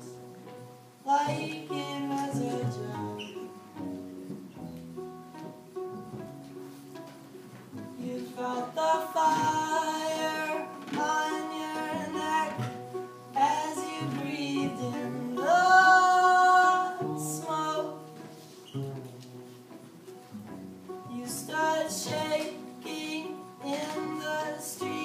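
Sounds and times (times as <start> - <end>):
person singing: 1.0 - 3.5, 8.0 - 18.4, 21.0 - 25.0.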